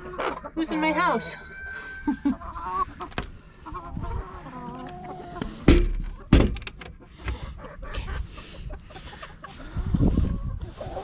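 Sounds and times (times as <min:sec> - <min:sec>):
chicken calling: 0:00.0 - 0:06.3
loud wooden thunks: 0:05.7 - 0:07.0.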